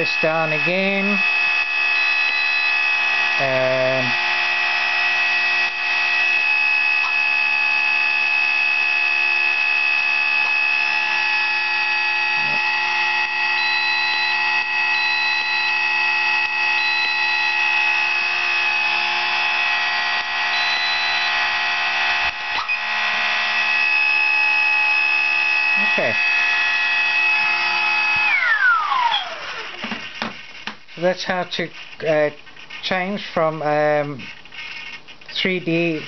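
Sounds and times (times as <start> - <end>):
electric motor whine: 0.0 - 33.2
short high beeps: 1.9 - 2.8, 13.6 - 15.9, 16.7 - 17.6, 20.5 - 21.4.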